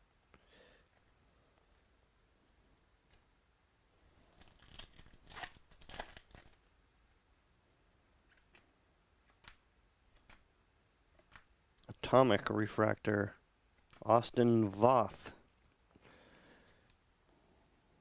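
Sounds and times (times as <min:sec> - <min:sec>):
foil wrapper tearing and crinkling: 0:04.1 - 0:06.6.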